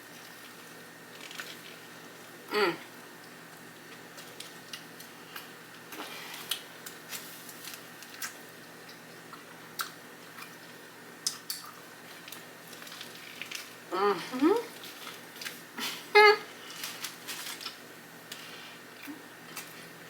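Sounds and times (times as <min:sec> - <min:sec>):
chewing crunchy food: 0:00.0 - 0:13.9, 0:14.6 - 0:20.0
person humming: 0:02.5 - 0:02.9, 0:13.9 - 0:14.7, 0:15.8 - 0:16.5.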